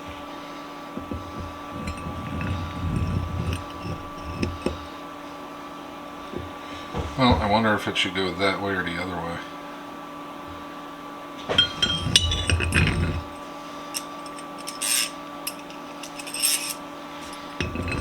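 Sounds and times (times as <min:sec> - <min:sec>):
metal parts clinking and clattering: 0:01.7 - 0:04.8, 0:11.5 - 0:18.0.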